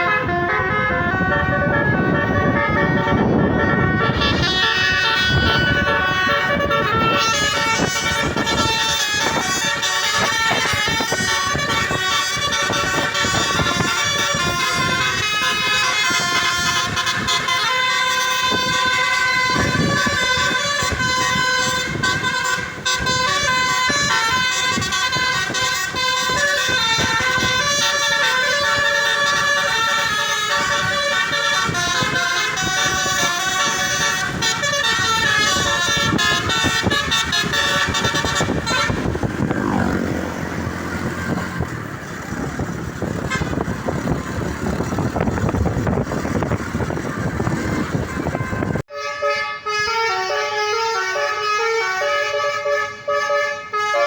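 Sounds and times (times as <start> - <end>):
air horns playing a tune: 0.0 - 54.0
low rumbling noise: 35.0 - 48.8.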